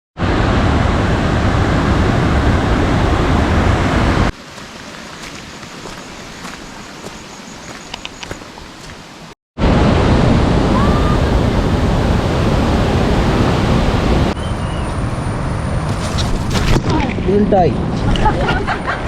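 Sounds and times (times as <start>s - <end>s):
waterfall rushing: 0.2s - 9.4s
faint clicks: 7.8s - 8.4s.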